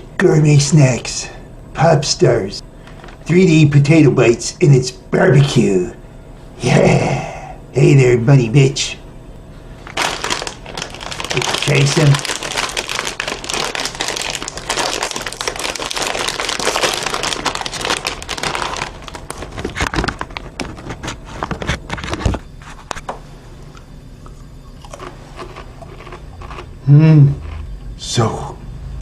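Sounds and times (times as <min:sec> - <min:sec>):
plastic snack bag crinkling: 0:02.8 - 0:03.3, 0:09.8 - 0:22.4, 0:24.9 - 0:26.7.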